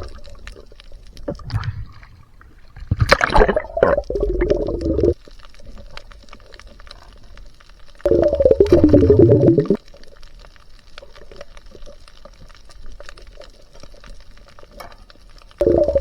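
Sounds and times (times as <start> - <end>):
underwater bubbling: 0.0 - 16.0
faint scattered clicks: 9.7 - 16.0.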